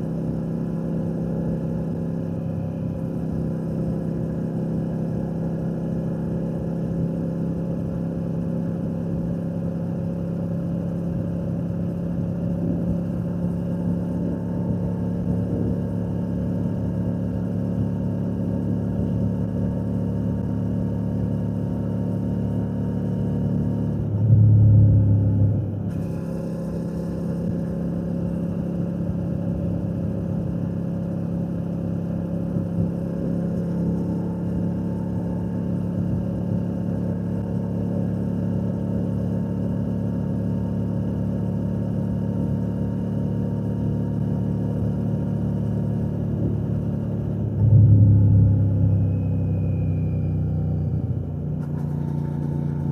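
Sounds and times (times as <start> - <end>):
loud low rumble: 12.2 - 17.5, 24.0 - 30.6, 31.7 - 37.8, 46.2 - 52.9
motorcycle engine cruising: 45.9 - 52.9.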